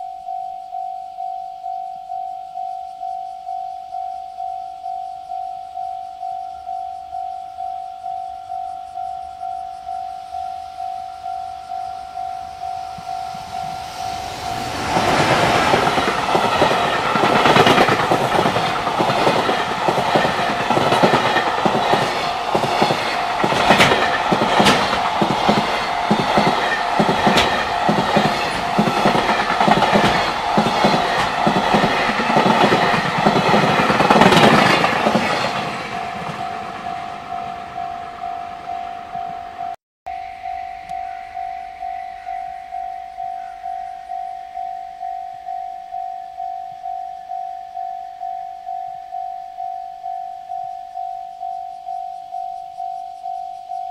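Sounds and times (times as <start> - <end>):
level-crossing alarm dinging: 0.0 - 53.9
train wheels clattering over rails: 13.3 - 37.0.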